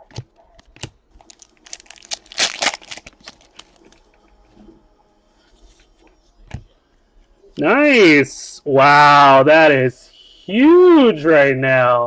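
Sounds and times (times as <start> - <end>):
wrapper crinkling and tearing: 1.2 - 4.0.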